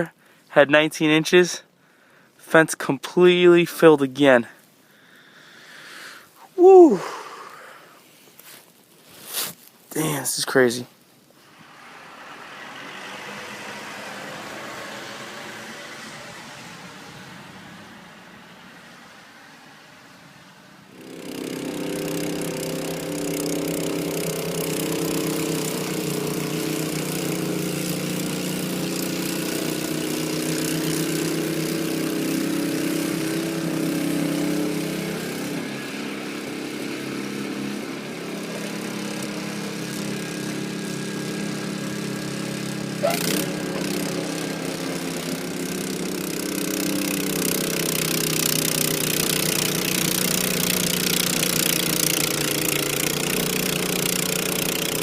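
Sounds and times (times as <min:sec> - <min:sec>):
snowblower engine running: 0:11.4 - 0:19.0, 0:20.9 - 0:55.0.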